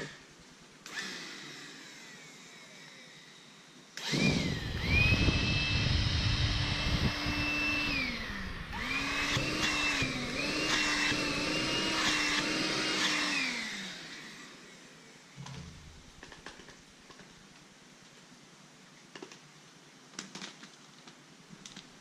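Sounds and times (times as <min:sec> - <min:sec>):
cordless vacuum whining: 0:00.8 - 0:03.4, 0:04.0 - 0:14.7.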